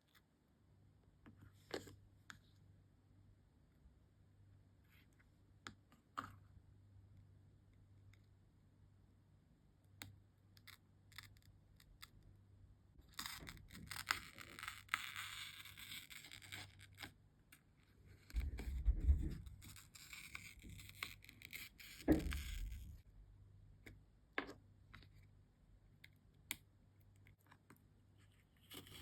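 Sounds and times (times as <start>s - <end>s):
low thumps: 18.4s - 19.6s.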